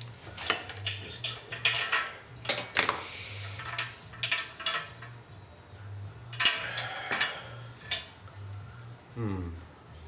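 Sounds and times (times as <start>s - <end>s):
metallic clinks of exhaust pipe: 0.0s - 5.4s, 6.2s - 8.8s.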